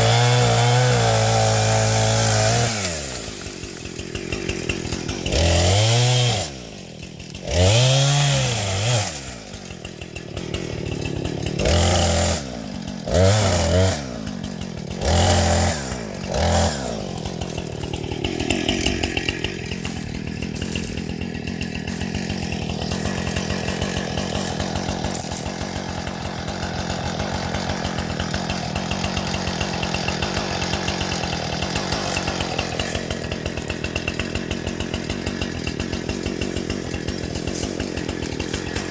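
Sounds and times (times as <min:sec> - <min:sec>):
engine revving: 0:05.2 - 0:06.7, 0:07.4 - 0:14.3, 0:14.9 - 0:20.0.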